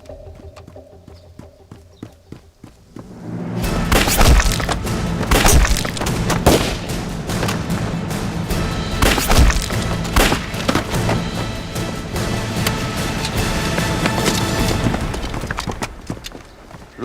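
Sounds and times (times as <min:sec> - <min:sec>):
dramatic orchestral music: 0:02.9 - 0:16.2
heavy thuds and crashes: 0:03.0 - 0:12.9.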